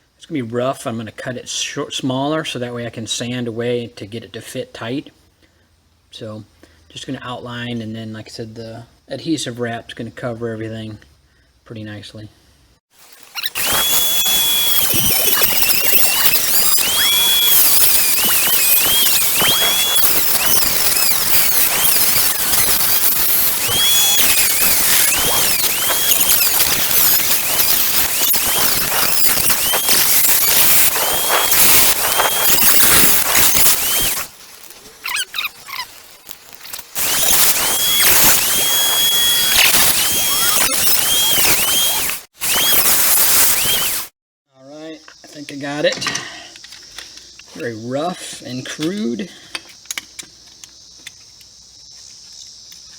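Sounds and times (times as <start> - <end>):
rotary tool cutting plastic: 13.0 - 44.1.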